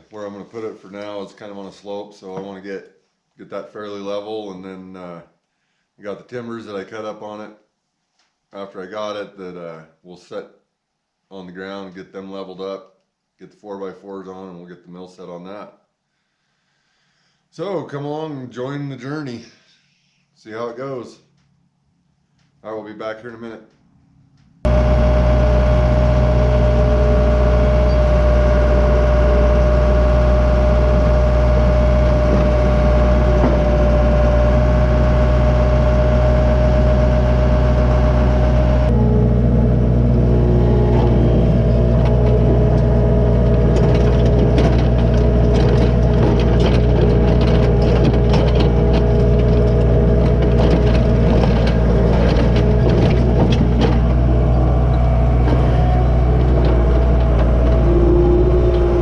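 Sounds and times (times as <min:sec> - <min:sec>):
clanking and scraping clatter: 0:24.7 - 0:34.8, 0:38.9 - 0:59.0
heavy machine engine running: 0:24.7 - 0:59.0.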